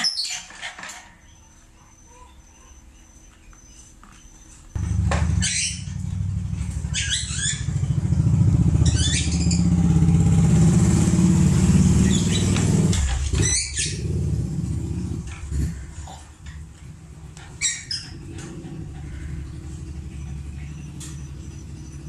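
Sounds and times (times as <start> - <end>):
engine running: 4.7 - 22.0.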